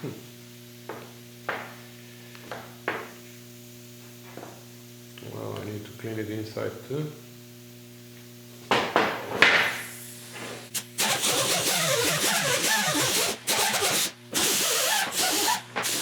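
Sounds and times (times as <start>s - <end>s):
wire wheel scrubbing metal: 10.8s - 16.0s.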